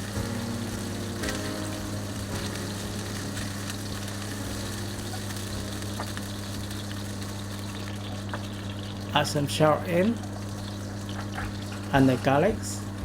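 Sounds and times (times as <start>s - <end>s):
chicken sizzling in oil: 0.0s - 13.0s
steady low hum: 0.0s - 13.0s
small crackles: 0.4s - 9.2s, 10.0s - 12.2s.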